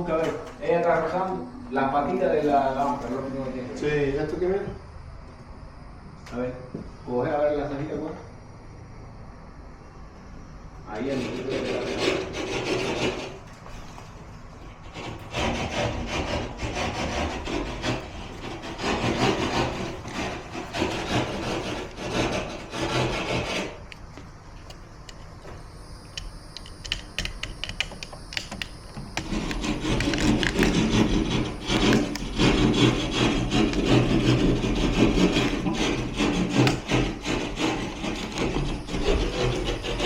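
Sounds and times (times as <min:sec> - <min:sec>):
scraping against drywall: 0:10.9 - 0:24.0, 0:29.2 - 0:40.0.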